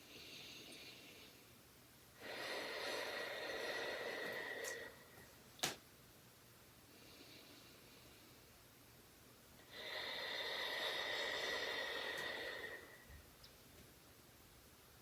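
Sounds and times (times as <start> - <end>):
breathy exhale with whistling tone: 9.7 - 13.2.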